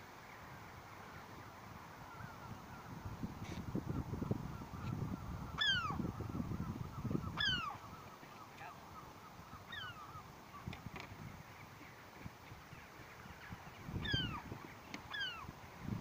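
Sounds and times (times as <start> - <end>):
gull calling: 3.9 - 10.7, 14.0 - 14.5, 15.1 - 15.5.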